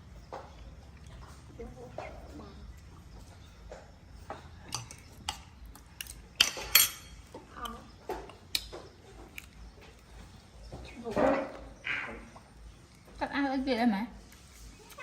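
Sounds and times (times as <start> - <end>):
utensils and dishes clinking: 3.3 - 9.6.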